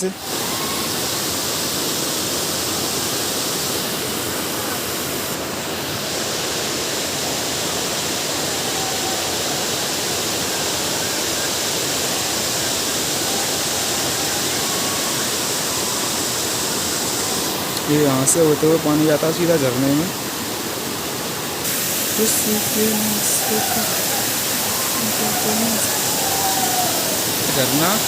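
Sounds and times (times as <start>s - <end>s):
stream rushing over rocks: 0.0s - 28.0s.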